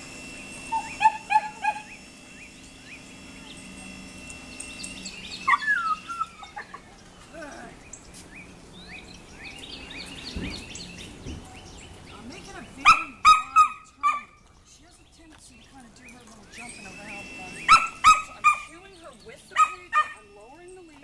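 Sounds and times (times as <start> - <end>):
loud wavering bird call: 0.0 - 11.8
wild birds chirping: 0.0 - 21.0.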